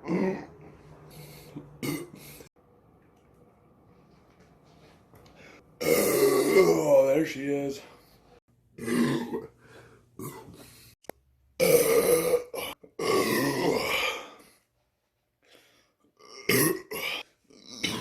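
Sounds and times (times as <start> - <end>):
man burping loudly: 5.8 - 6.9, 8.8 - 9.5, 11.6 - 14.4, 16.2 - 18.0.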